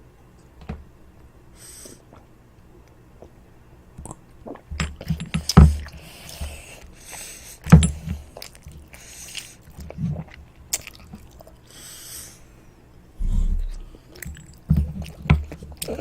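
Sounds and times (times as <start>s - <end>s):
child chewing toast: 4.0s - 11.8s
loud low thumps: 13.2s - 14.0s.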